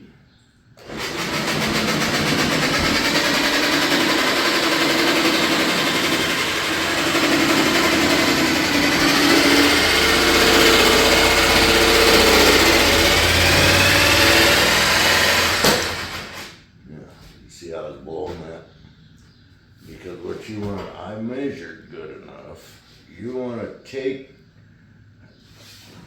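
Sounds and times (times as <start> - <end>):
jigsaw cutting wood: 0.8 - 16.6.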